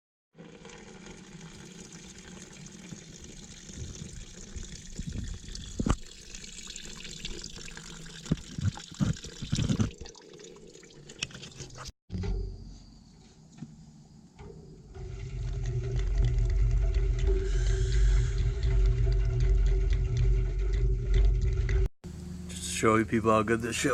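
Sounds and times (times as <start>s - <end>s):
water pouring and splashing: 0.3s - 11.9s, 15.0s - 21.9s.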